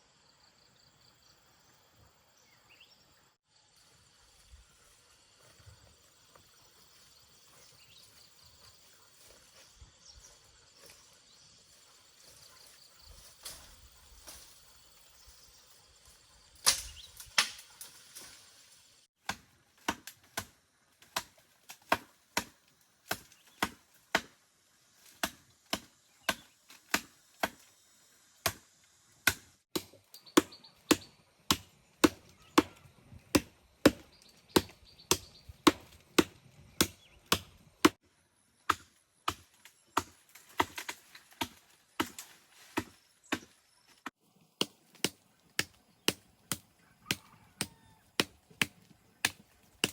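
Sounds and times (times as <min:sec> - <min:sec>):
hand tool chopping: 0:19.2 - 0:24.4, 0:25.1 - 0:27.6, 0:28.4 - 0:28.6, 0:29.2 - 0:38.0, 0:38.7 - 0:43.5, 0:44.6 - 0:49.9.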